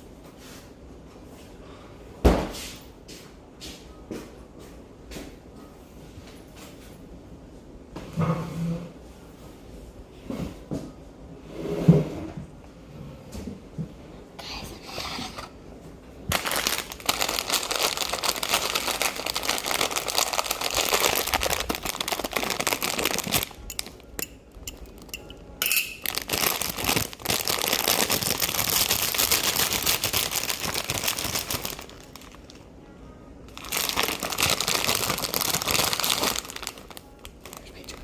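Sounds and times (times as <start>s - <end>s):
plastic packaging crinkling: 16.3s - 25.3s, 26.0s - 32.6s, 33.5s - 38.0s.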